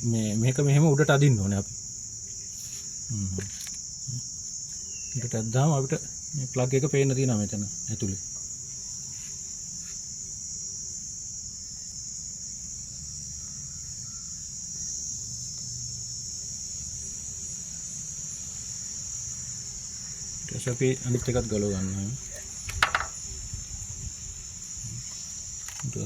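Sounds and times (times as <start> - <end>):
insects chirring: 0.0 - 26.0
faint clicks: 25.0 - 26.0.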